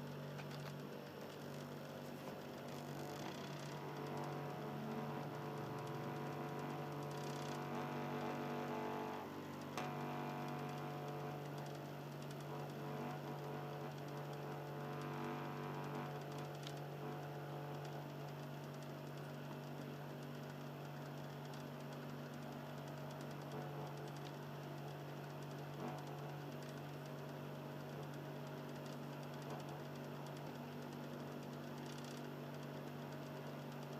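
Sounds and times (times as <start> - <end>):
disc drive motor humming: 0.0 - 33.9.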